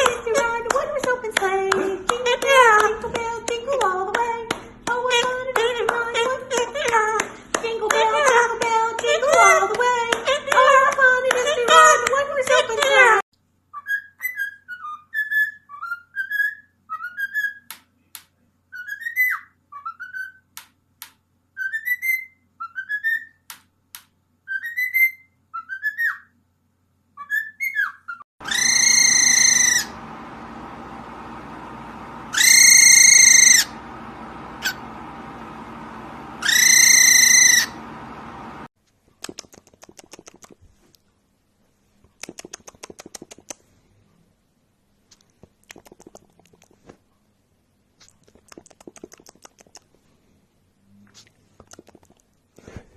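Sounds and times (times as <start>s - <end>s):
parrot whistling short rising notes: 27.2s - 30.0s, 32.3s - 33.8s, 36.4s - 37.8s
parrot long steady calls: 28.4s - 30.0s, 32.3s - 33.8s, 36.4s - 37.8s
parrot clicks: 45.6s - 46.8s, 48.3s - 49.9s.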